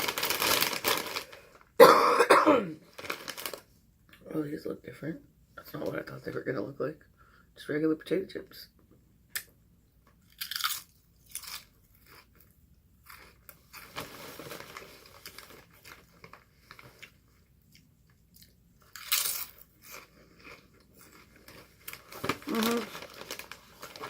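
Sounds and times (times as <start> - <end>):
chips crunching while chewing: 0.0 - 1.3, 10.2 - 14.0, 17.0 - 24.0.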